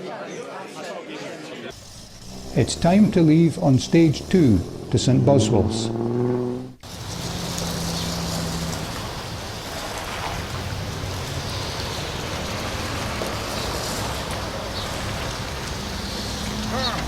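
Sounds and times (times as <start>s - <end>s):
rushing hiss: 1.7s - 4.7s, 6.8s - 16.9s
car engine running: 1.7s - 17.0s.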